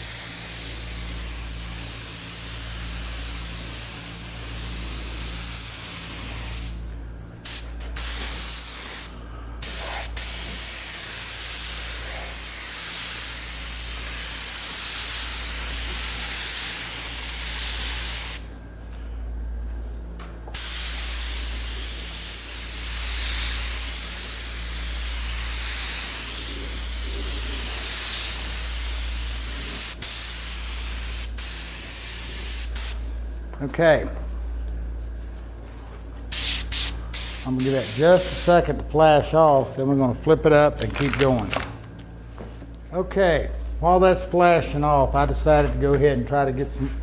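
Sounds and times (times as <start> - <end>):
spray gun hissing: 0.0 - 18.5, 20.5 - 33.2, 36.3 - 39.4
steady low hum: 0.0 - 47.0.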